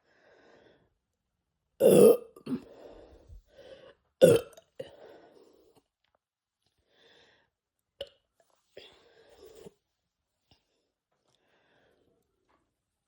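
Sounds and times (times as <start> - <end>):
quiet breathing: 0.0 - 1.1, 2.6 - 4.2, 4.8 - 6.0, 6.6 - 7.6, 8.6 - 12.6
man burping loudly: 1.8 - 2.6, 4.2 - 4.6.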